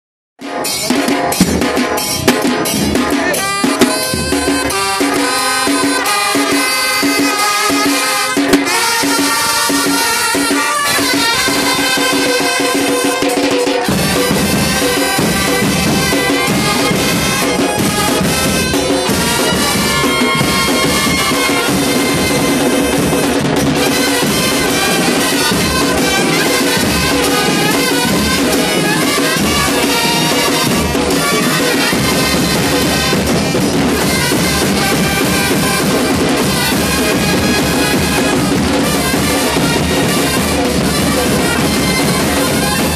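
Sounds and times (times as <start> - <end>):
drum kit playing: 0.4 - 42.9
brass instruments holding notes: 2.6 - 42.9.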